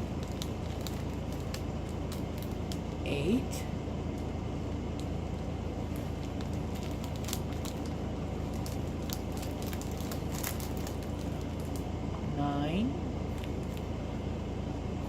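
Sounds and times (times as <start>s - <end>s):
plastic bags crinkling and clicking: 0.0s - 3.0s, 5.9s - 11.9s, 13.3s - 13.9s
steady low hum: 0.0s - 15.0s.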